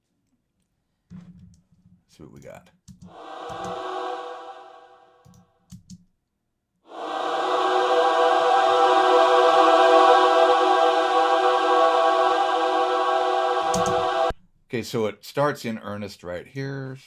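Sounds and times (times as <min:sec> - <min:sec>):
synthesised choir pad: 0:03.1 - 0:05.3, 0:06.9 - 0:14.3.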